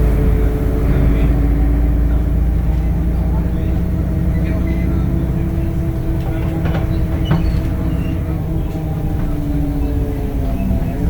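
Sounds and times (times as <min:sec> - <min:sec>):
bus diesel engine drone: 0:00.0 - 0:11.0
short rattles: 0:03.4 - 0:10.4.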